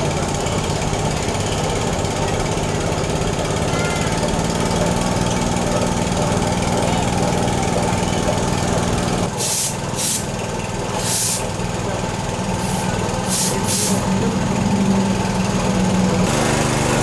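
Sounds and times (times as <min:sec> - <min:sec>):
small engine running: 0:00.0 - 0:17.0
short hissing bursts: 0:09.4 - 0:10.3, 0:11.0 - 0:11.5, 0:12.6 - 0:14.1.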